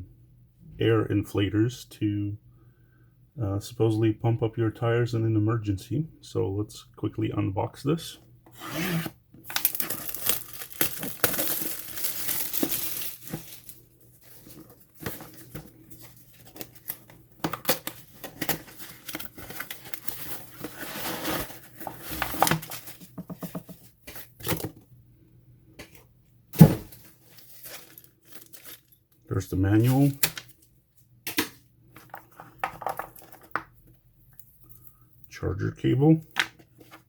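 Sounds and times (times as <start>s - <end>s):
packaging tearing and crinkling: 8.7s - 15.5s, 16.2s - 23.0s, 26.9s - 29.0s.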